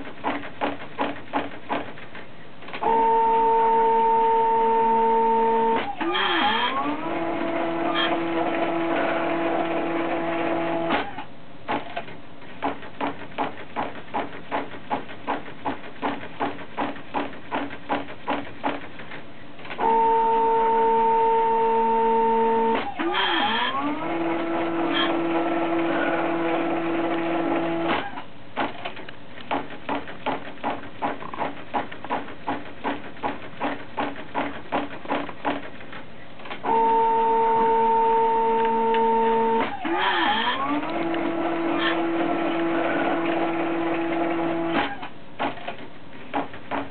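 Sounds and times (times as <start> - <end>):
stepper motors whining: 2.8 - 11.2, 19.8 - 28.2, 36.6 - 45.0.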